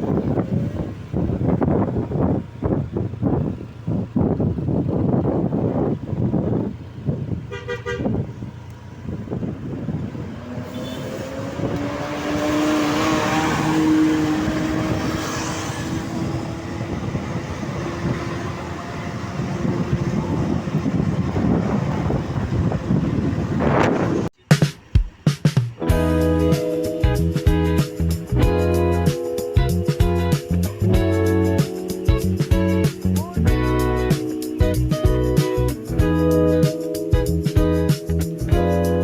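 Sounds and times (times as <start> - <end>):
traffic and engines: 0.0 - 39.0
musical bus horn: 7.5 - 8.2, 10.7 - 11.4
stuttering horn toot: 7.5 - 8.2, 10.6 - 16.3.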